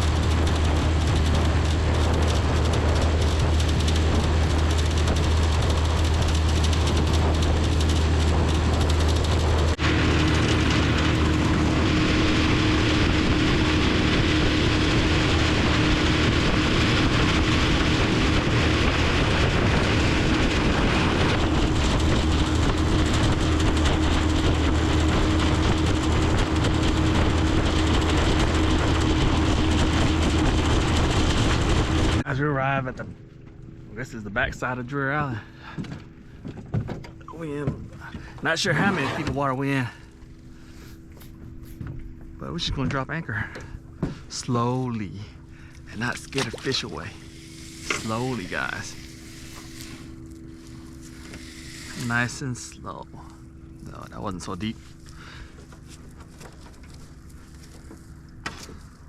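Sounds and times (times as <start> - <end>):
rushing water: 0.0 - 32.2, 45.3 - 53.1
rushing wind: 0.0 - 32.3, 37.9 - 59.0
boat motor running: 0.0 - 59.0.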